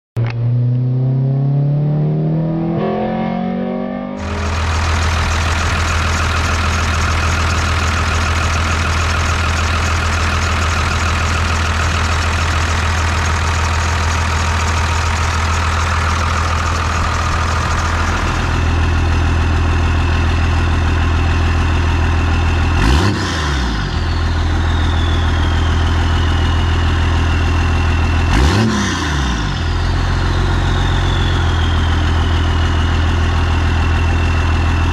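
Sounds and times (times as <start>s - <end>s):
diesel engine revving and idling: 0.2s - 34.9s
high turbo whistle: 22.8s - 34.9s.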